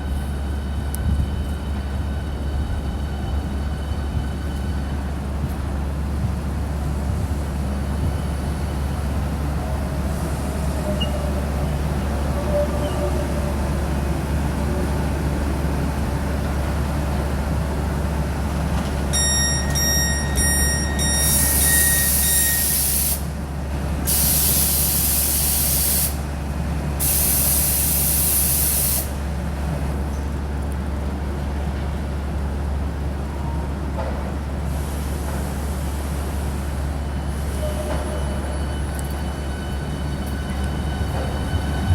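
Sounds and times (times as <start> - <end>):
electric train humming: 0.0 - 27.0, 35.9 - 41.9
compressed air hissing: 21.3 - 23.3, 24.1 - 26.2, 27.0 - 29.2.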